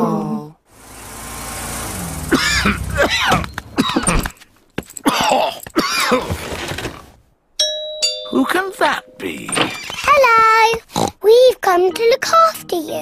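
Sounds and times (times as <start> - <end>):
cartoon voice groaning and coughing: 2.3 - 4.3, 5.0 - 6.4.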